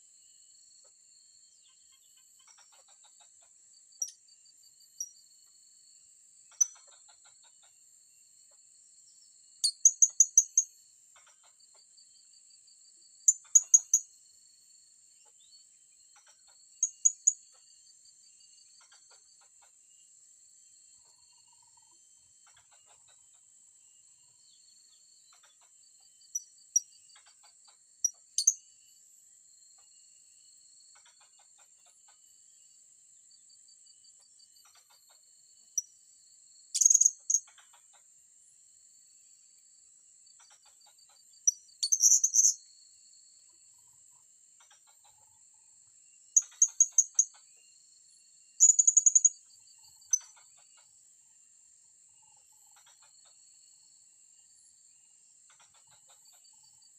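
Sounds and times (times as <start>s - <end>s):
cricket trill: 0.1s - 56.9s
insect hiss: 35.4s - 37.5s, 41.3s - 43.4s, 46.0s - 50.3s.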